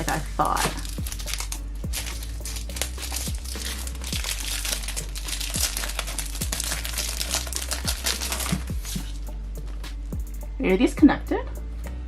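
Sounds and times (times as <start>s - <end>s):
plastic packaging crinkling: 0.0s - 9.2s
quiet background music with beat: 0.0s - 12.0s.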